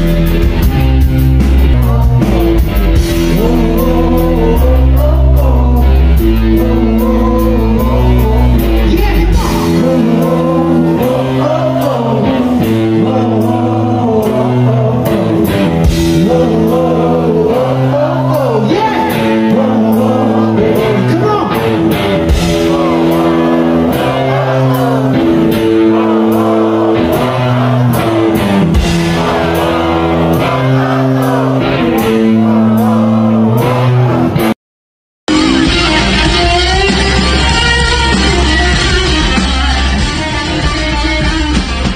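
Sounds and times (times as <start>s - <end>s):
heavy low bass note: 0.0s - 11.6s, 35.3s - 41.9s
drums: 0.0s - 34.5s, 35.3s - 41.9s
electric guitar: 0.0s - 34.5s, 35.3s - 41.9s
person singing: 1.6s - 34.5s.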